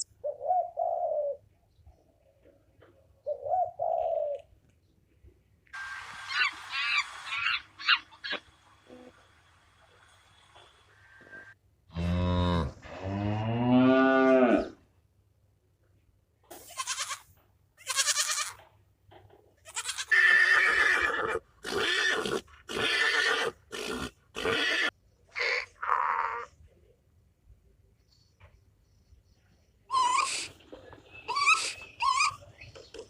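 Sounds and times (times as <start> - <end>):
farm animals calling: 0.0 - 1.4, 5.8 - 9.2, 29.9 - 33.0.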